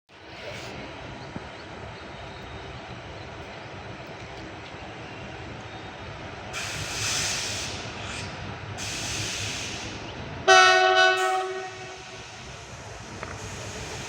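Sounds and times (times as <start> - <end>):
locomotive rushing hiss: 6.4 - 10.4, 11.2 - 14.0
train horn blast: 10.5 - 12.4.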